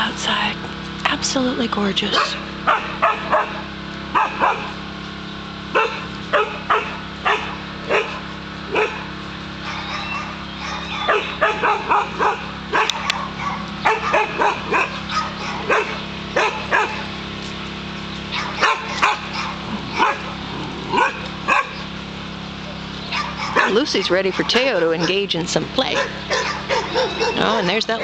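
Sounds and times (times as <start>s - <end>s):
dog barking: 2.1s - 4.8s, 5.7s - 17.0s, 18.3s - 20.3s, 20.9s - 21.8s, 23.1s - 25.3s, 25.9s - 28.0s.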